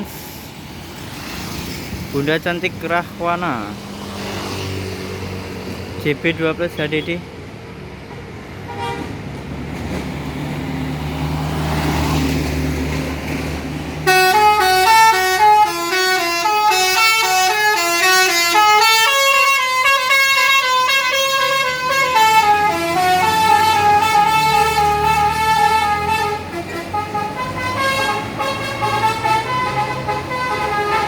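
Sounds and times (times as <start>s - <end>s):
musical bus horn melody: 8.7s - 9.2s, 14.0s - 31.0s
bus engine running: 12.2s - 31.0s.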